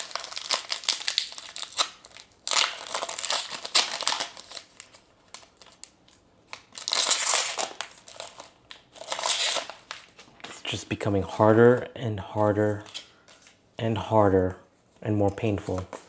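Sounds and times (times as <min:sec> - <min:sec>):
foil wrappers crinkling: 0:00.0 - 0:10.4.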